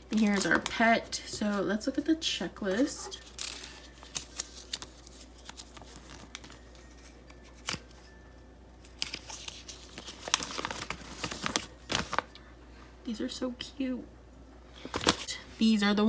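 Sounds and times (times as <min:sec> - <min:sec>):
packaging crinkling and rustling: 0:00.1 - 0:01.8, 0:02.6 - 0:08.2, 0:08.8 - 0:12.4, 0:14.8 - 0:15.4.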